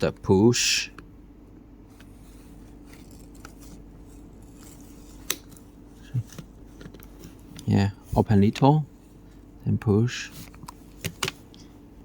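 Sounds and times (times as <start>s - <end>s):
steady low hum: 0.0s - 12.0s
plastic handling scrapes: 2.0s - 7.6s.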